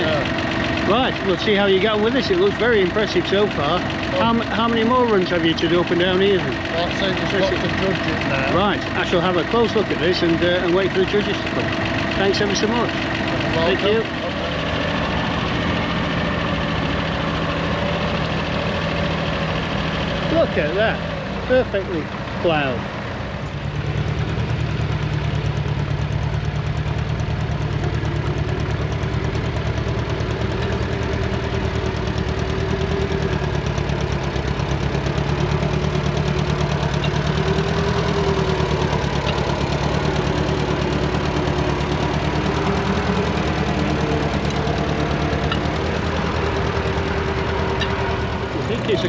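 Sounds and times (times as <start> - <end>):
tractor engine running: 0.0 - 49.0.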